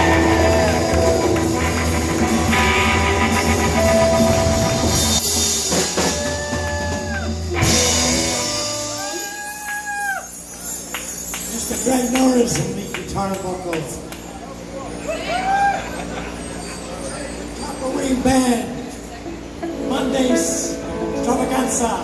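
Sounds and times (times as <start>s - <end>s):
low bass note: 0.0s - 5.2s
live rock band jamming: 0.0s - 12.8s.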